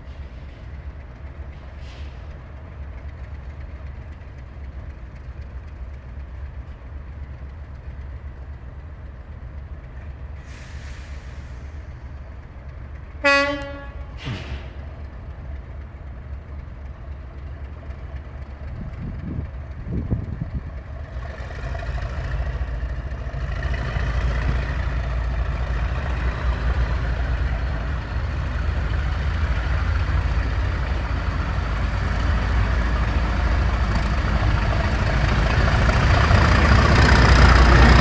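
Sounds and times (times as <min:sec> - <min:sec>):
diesel locomotive engine rumbling: 0:00.0 - 0:38.0
brief hiss: 0:10.4 - 0:12.0, 0:14.0 - 0:15.0
locomotive horn blast: 0:13.2 - 0:14.8.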